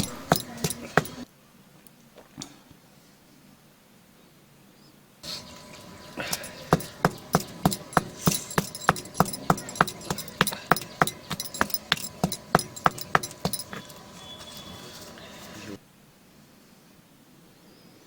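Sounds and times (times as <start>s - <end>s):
pestle pounding in a mortar: 0.0s - 1.2s, 5.4s - 14.0s.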